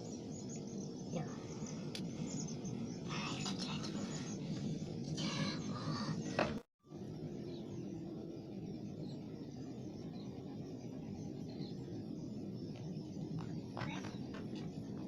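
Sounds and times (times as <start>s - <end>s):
outdoor background noise: 0.0s - 15.0s.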